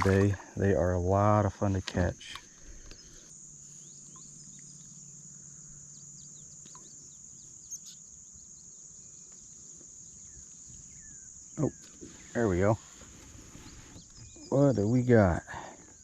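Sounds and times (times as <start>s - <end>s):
crickets droning: 0.0s - 16.0s
bird chirps: 2.5s - 12.6s, 13.5s - 15.1s.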